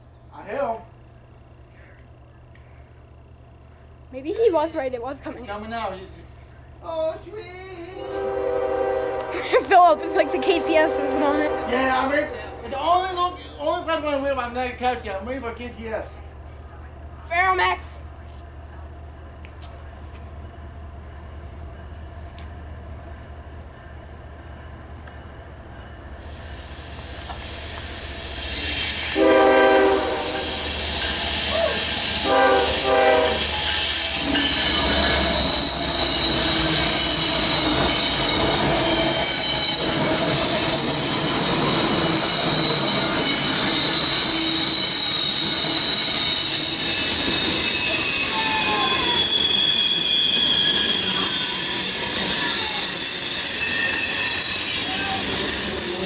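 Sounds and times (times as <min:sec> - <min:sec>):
diesel locomotives rumbling: 0:00.0 - 0:56.0
locomotive horn blasts: 0:08.0 - 0:13.0, 0:29.1 - 0:30.6, 0:32.0 - 0:33.9
high-pitched wheel squeal: 0:26.2 - 0:56.0.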